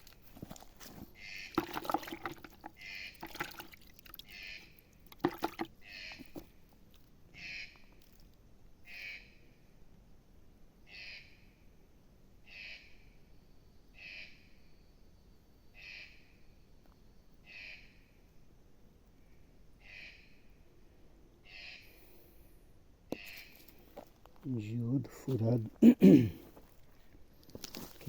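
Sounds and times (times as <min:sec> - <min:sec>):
faint bird calling: 0:10.9 - 0:11.4, 0:19.3 - 0:20.6, 0:21.4 - 0:22.2.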